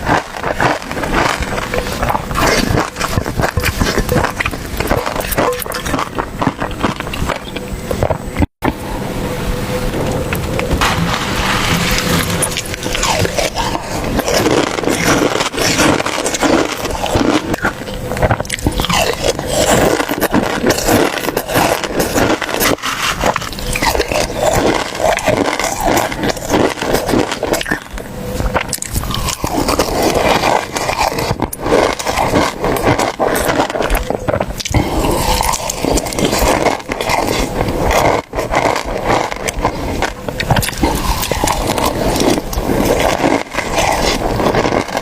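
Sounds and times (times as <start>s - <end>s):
person crunching and chewing: 0.0s - 8.8s, 10.0s - 45.0s
scraping sounds: 0.0s - 45.0s.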